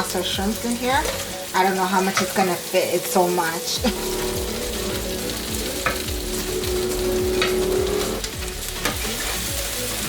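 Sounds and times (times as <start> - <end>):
butter sizzling in a pot: 0.0 - 10.0
utensil scraping and knocking pot: 3.8 - 9.0.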